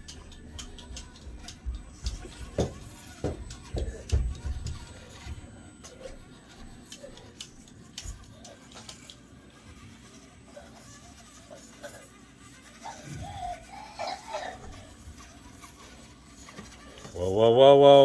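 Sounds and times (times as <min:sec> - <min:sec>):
faint clicks and knocks: 0:00.0 - 0:09.3.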